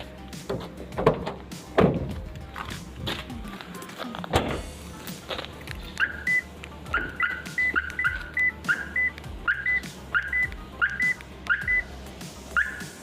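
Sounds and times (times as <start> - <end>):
car alarm chirping and beeping: 6.0 - 11.9, 12.5 - 13.0.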